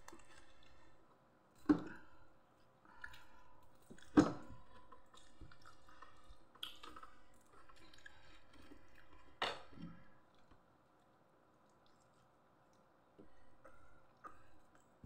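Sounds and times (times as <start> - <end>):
wet chewing: 2.9 - 9.4.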